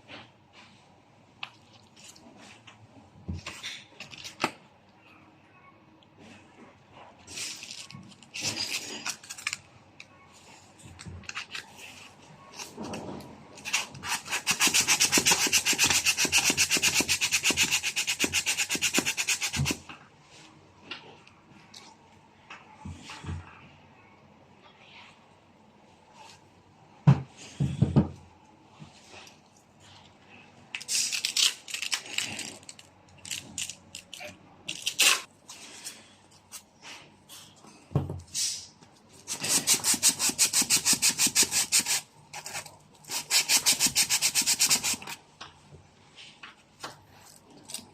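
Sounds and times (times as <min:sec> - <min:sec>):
sandpaper scraping strokes: 0:13.7 - 0:19.8, 0:39.3 - 0:45.2.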